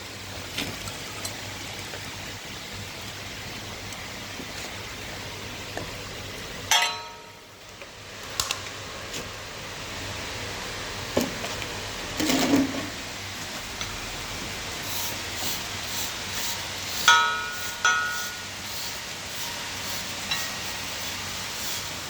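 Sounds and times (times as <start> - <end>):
steady hiss: 13.0 - 22.0
metal clanks and knocks: 17.1 - 18.5.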